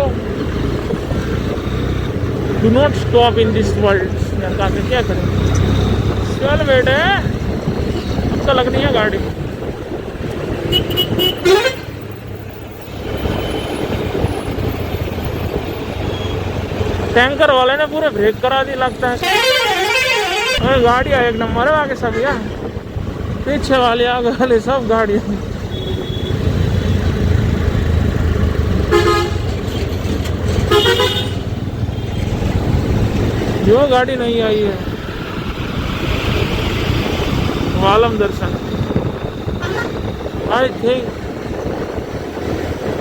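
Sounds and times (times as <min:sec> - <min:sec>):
engine and road noise: 0:00.0 - 0:43.0
vehicle horn tooting: 0:10.7 - 0:12.0, 0:19.2 - 0:20.7, 0:25.7 - 0:26.4, 0:28.9 - 0:29.5, 0:30.6 - 0:31.5, 0:39.5 - 0:40.1.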